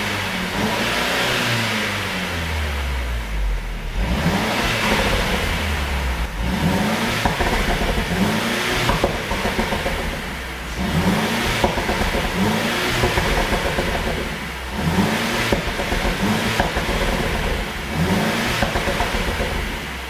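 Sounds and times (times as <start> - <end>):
car engine revving: 0.0 - 20.0
exhaust pops: 4.0 - 20.0.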